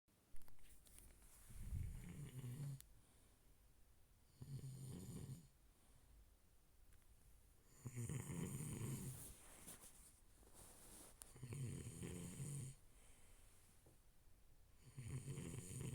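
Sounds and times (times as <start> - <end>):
person snoring: 1.8 - 2.8, 7.8 - 9.2, 14.8 - 15.9.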